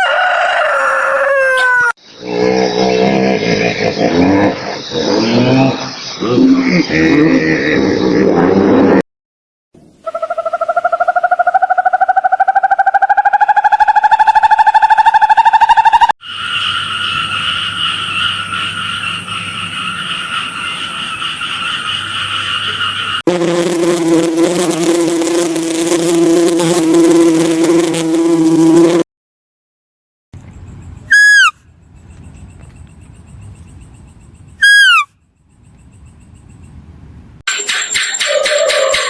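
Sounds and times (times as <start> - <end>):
loud falling animal calls: 0.0 - 2.0, 10.1 - 23.2, 31.1 - 31.6, 34.6 - 35.1, 37.8 - 39.0.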